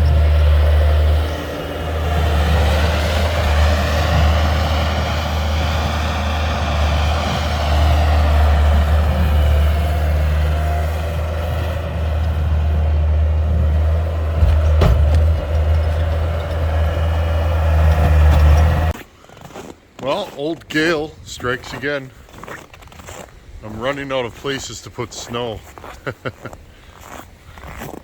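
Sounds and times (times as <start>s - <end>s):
skid steer running under load: 0.0s - 19.0s.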